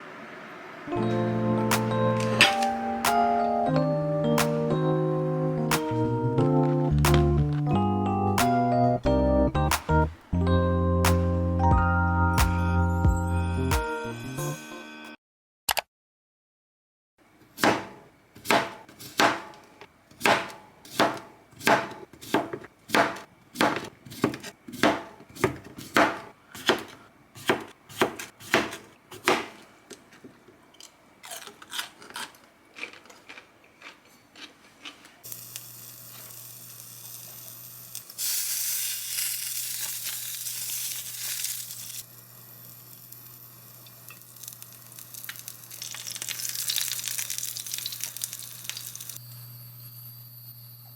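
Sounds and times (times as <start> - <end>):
knife chopping on wooden board: 17.6 - 19.6, 20.2 - 29.6
low hum with hiss: 35.3 - 50.9.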